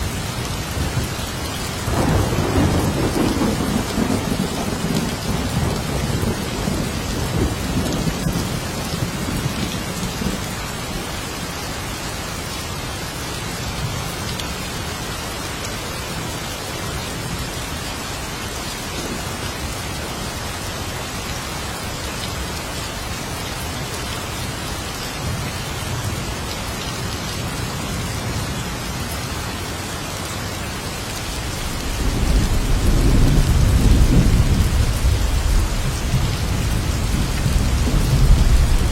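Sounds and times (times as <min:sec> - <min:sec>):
heavy rain: 0:00.0 - 0:38.9
rolling thunder: 0:01.8 - 0:09.1, 0:31.5 - 0:38.9.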